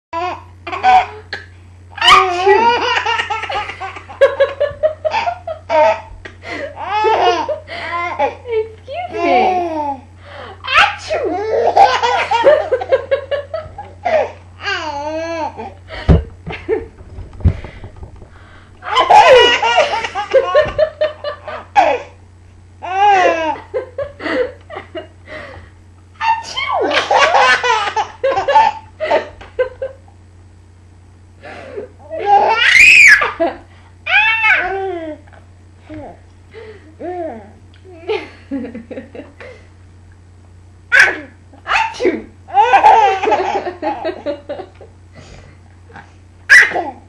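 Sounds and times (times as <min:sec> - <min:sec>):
baby girl laughing: 0:00.2 - 0:01.4, 0:02.0 - 0:06.1, 0:06.7 - 0:10.0, 0:10.6 - 0:13.0, 0:18.8 - 0:22.2, 0:22.8 - 0:23.8, 0:26.2 - 0:29.4, 0:40.9 - 0:44.4.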